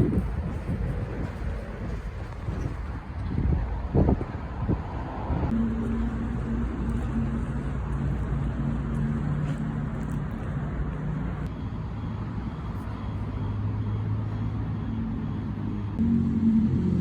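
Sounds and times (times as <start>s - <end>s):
road noise: 0.0s - 17.0s
vehicle engine running: 5.5s - 11.6s, 12.3s - 17.0s.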